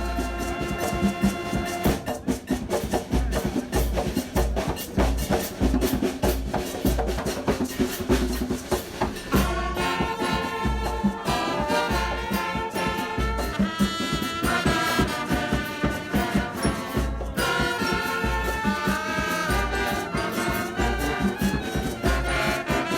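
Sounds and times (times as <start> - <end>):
horn-like sustained notes: 0.0 - 2.0, 9.4 - 22.9.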